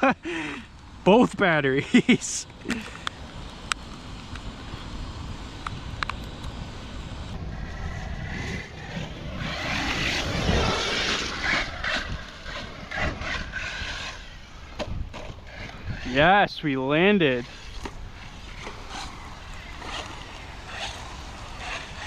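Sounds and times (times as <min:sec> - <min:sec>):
rc truck motor whining: 0:03.9 - 0:16.2, 0:17.4 - 0:22.0
tyre and spray noise: 0:08.3 - 0:22.0.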